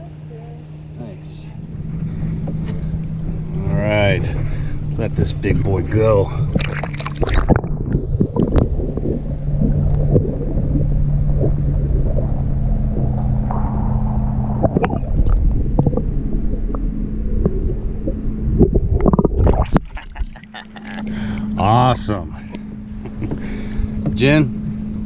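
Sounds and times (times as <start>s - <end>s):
boat motor humming: 0.0s - 25.0s
wind rumbling on microphone: 1.6s - 21.6s.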